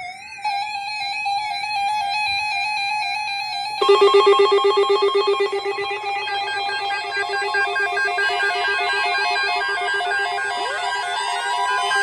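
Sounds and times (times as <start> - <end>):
rapid trilling alert tones: 3.8 - 12.0
steady wavering alert tone: 3.8 - 12.0.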